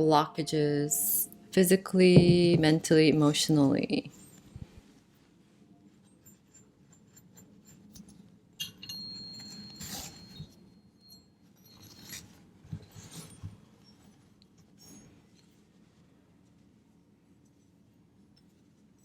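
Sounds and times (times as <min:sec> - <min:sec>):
tuning fork ringing: 0:00.4 - 0:01.7, 0:08.6 - 0:11.8
light metallic clinks: 0:08.0 - 0:12.2.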